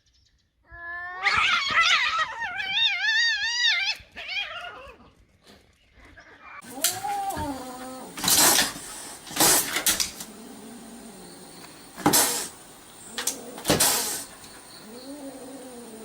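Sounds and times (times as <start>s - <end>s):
cat wavering meow: 6.6s - 8.2s
cat short sharp noisy bursts: 6.6s - 16.0s.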